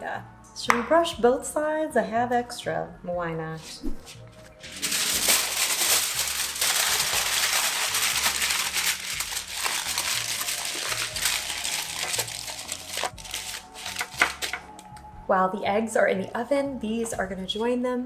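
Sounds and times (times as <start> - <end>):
pastry brush scratching on bread: 3.8 - 4.1.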